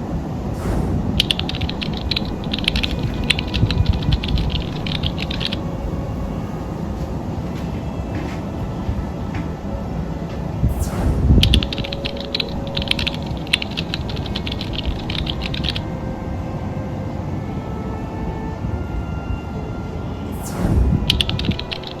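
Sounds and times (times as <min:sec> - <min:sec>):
wind buffeting microphone: 0:00.0 - 0:16.8, 0:20.3 - 0:22.0
sharp irregular clicks: 0:11.4 - 0:15.8.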